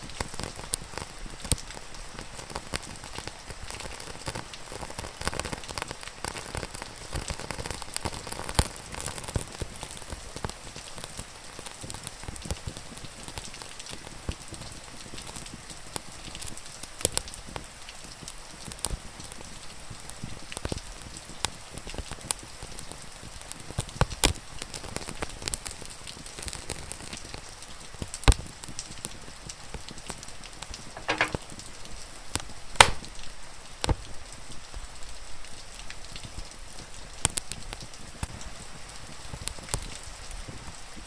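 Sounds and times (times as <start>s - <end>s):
wood fire crackling and popping: 0.0s - 34.8s, 35.5s - 40.8s
falling rain hiss: 0.0s - 41.0s.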